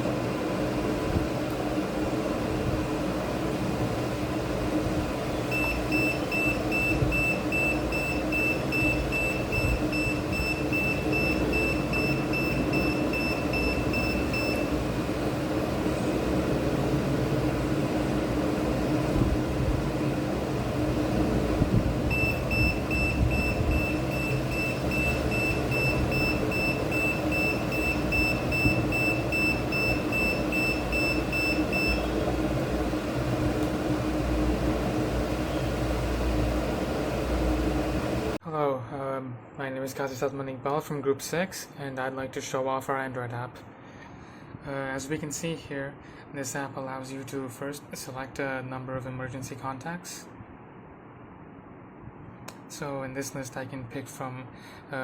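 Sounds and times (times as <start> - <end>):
short high-pitched alarm beeps: 5.5 - 14.7, 22.1 - 32.2.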